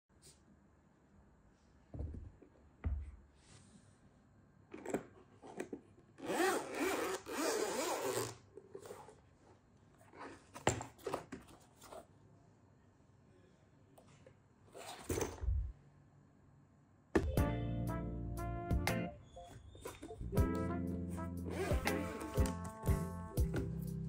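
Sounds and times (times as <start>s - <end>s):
zipper-like rasp: 6.2s - 9.2s, 21.2s - 22.6s.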